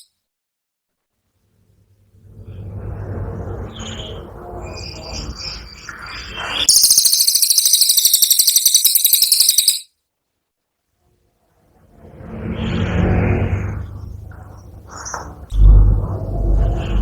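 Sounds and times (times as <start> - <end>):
low background rumble: 1.6 - 6.0, 11.5 - 17.0
songbird chirping and trilling: 3.4 - 9.9.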